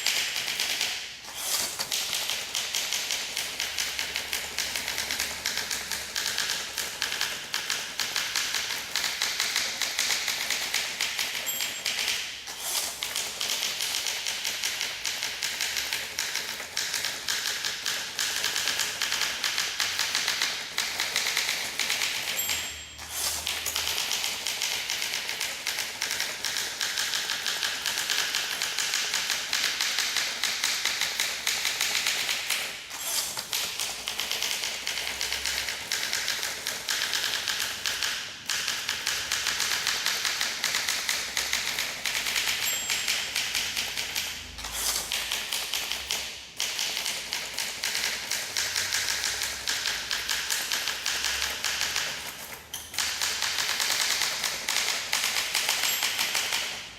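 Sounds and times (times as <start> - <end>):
manual typewriter typing: 0.0 - 56.9.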